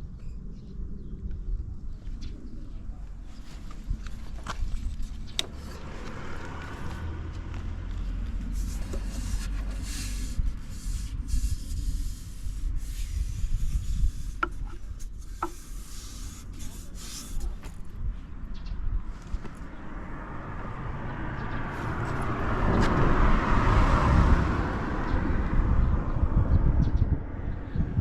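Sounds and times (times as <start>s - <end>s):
rubbing and hissing handling noise: 7.6s - 17.9s.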